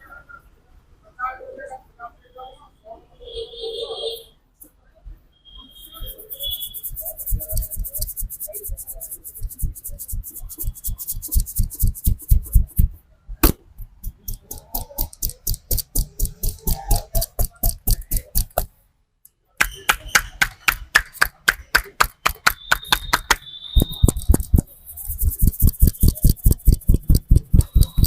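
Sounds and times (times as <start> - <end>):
hands striking in percussive massage: 6.0 - 18.7, 19.6 - 28.0.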